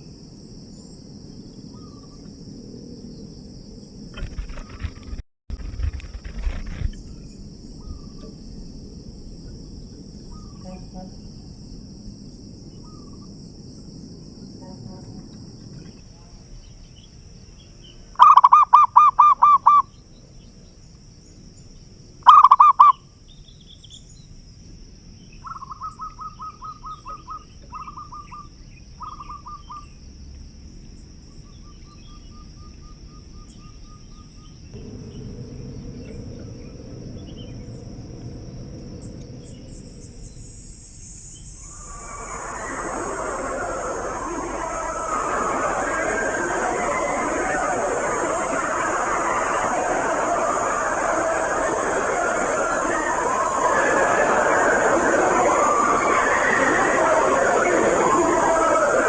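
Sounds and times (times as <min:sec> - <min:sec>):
high insect drone: 0:00.0 - 0:59.0
doves cooing: 0:41.6 - 0:59.0.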